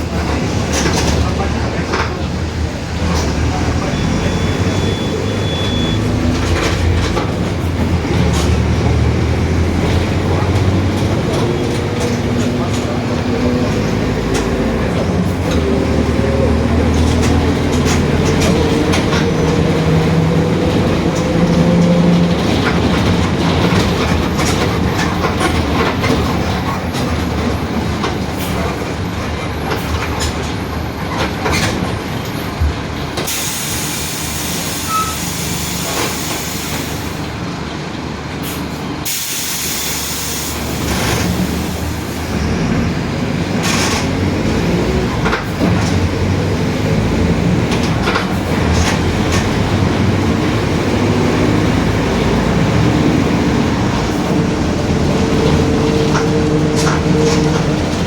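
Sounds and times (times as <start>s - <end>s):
bus diesel engine running: 0.0s - 58.0s
air hiss: 39.1s - 40.7s.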